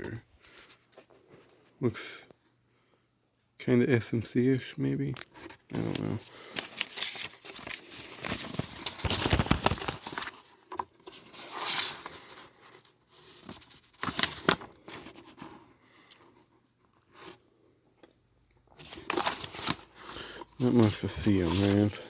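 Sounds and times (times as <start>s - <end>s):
paper rustling and crinkling: 5.2s - 15.6s, 18.8s - 22.0s.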